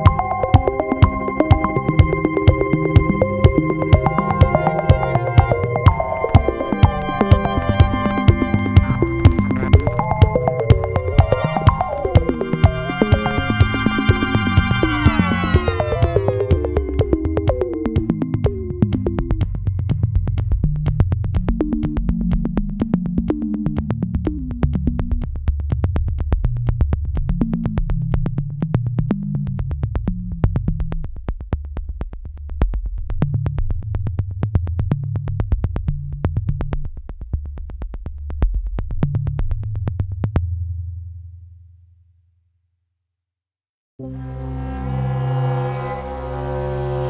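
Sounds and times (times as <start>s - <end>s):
electronic music with synth bass: 0.0s - 18.9s.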